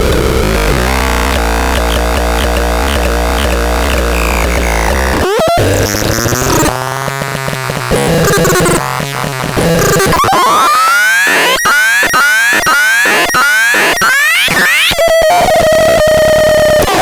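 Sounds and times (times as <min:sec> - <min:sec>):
clicks: 0:00.0 - 0:06.7
electronic rising pitch sweeps: 0:00.0 - 0:06.7, 0:08.0 - 0:08.8, 0:09.6 - 0:15.0
steady electronic tone: 0:00.0 - 0:06.7, 0:09.6 - 0:15.0.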